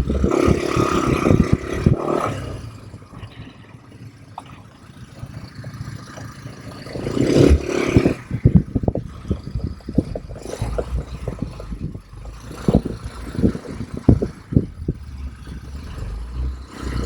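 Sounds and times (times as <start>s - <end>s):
atv engine revving: 0.0s - 17.0s
knocks and rattles: 3.0s - 17.0s.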